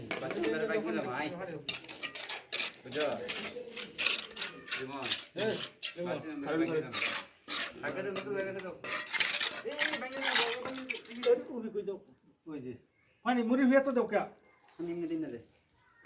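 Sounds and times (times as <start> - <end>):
metal tools scraping on concrete: 0.0 - 11.5
workers' voices: 0.0 - 11.6.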